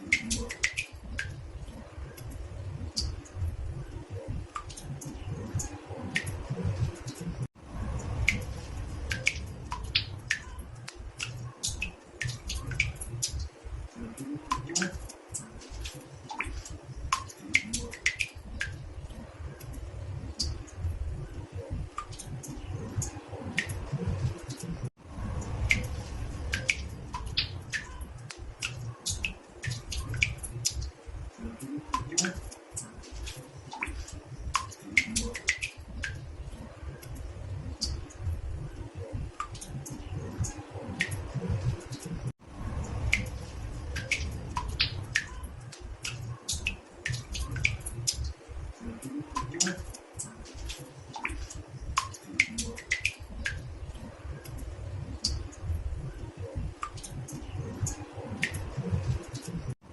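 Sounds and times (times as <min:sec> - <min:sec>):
water drops plinking into bathtub: 0:00.0 - 0:03.5, 0:08.0 - 0:24.8, 0:25.4 - 0:42.1, 0:42.8 - 0:59.7.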